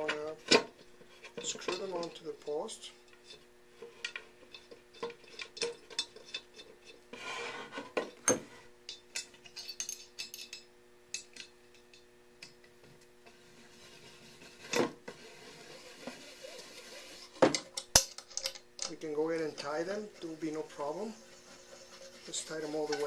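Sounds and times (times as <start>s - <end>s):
faint steady hum: 0.0s - 23.0s
small metal parts clinking: 8.9s - 12.0s
rubbing: 20.8s - 23.0s.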